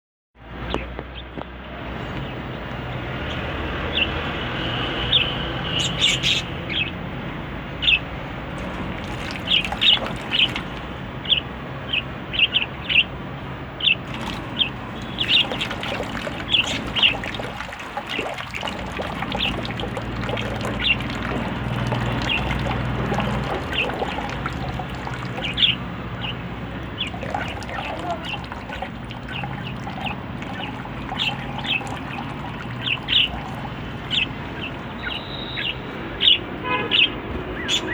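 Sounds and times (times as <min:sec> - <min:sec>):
birds chirping: 0:02.0 - 0:37.9.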